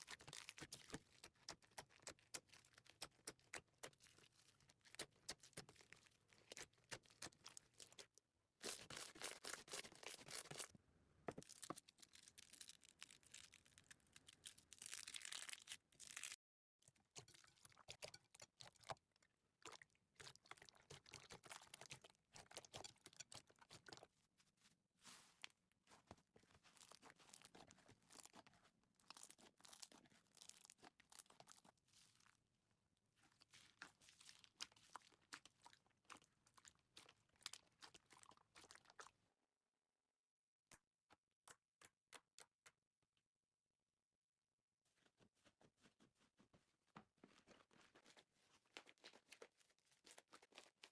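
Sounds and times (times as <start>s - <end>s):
slime crackling and crunching: 11.4s - 16.4s.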